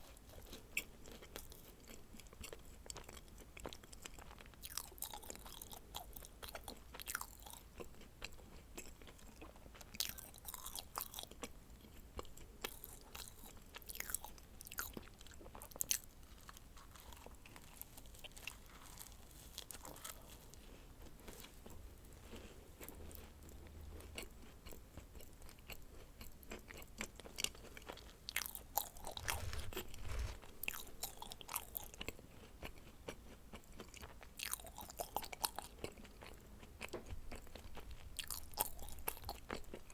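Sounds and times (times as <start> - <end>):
crunchy chewing: 0.0 - 39.9
soft mouth sounds: 28.7 - 30.4.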